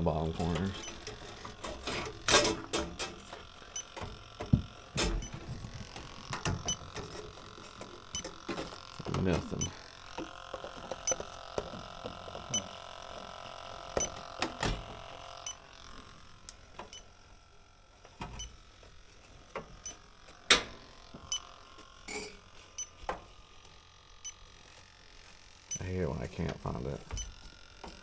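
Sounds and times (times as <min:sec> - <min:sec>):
leak detector ticking: 0:00.2 - 0:15.8, 0:16.4 - 0:17.2, 0:19.8 - 0:22.1, 0:22.7 - 0:23.0, 0:24.2 - 0:24.5, 0:27.1 - 0:27.4.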